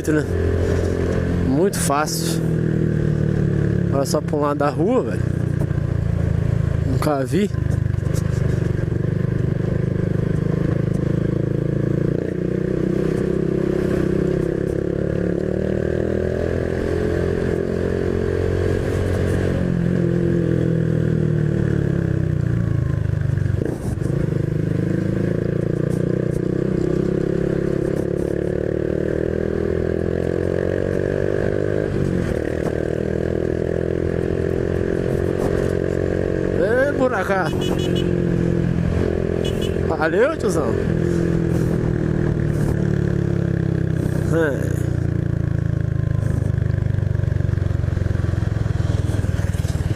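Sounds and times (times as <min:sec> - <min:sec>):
motorcycle engine revving: 0:00.0 - 0:49.9.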